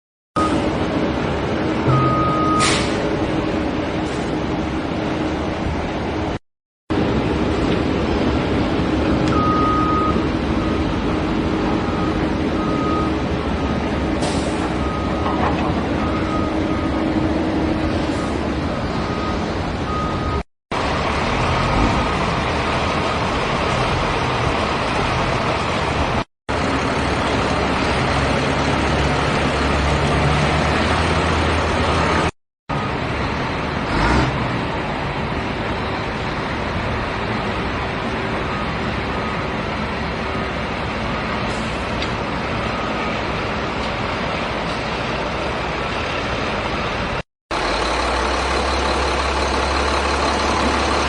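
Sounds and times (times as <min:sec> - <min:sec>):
heavy diesel engine running: 0:00.4 - 0:51.0
reversing alarm beeping: 0:01.9 - 0:03.0, 0:09.3 - 0:11.0, 0:11.7 - 0:13.2, 0:14.3 - 0:17.1, 0:19.0 - 0:20.4.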